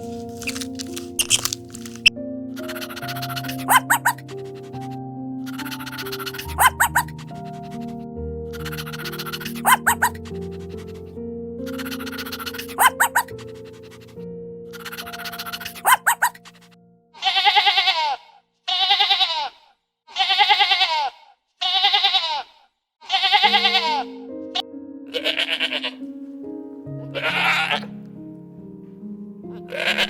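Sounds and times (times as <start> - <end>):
background music: 0.0 - 17.1, 23.4 - 30.0
high quavering bleats: 1.2 - 7.9, 8.6 - 14.1, 14.7 - 16.5, 17.2 - 26.0, 27.0 - 27.9, 29.5 - 30.0.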